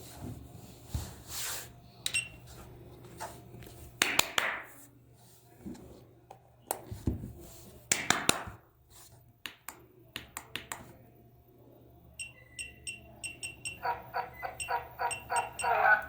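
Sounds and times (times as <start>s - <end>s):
electronic toy beeping: 12.2s - 16.0s
toy speaker tune: 12.2s - 16.0s.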